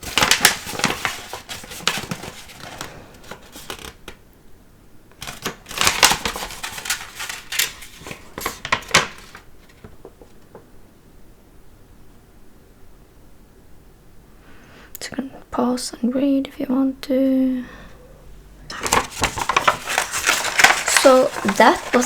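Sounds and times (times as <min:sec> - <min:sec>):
paper crackling and crinkling: 0:00.0 - 0:04.2, 0:05.1 - 0:10.6, 0:18.7 - 0:22.0.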